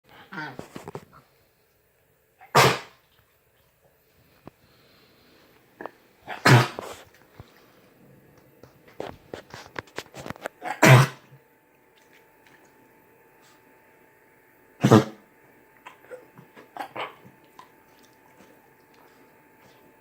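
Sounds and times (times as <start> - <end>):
small dog coughing: 2.4 - 3.0, 5.8 - 7.0, 10.6 - 11.4, 14.8 - 15.2, 15.8 - 17.3.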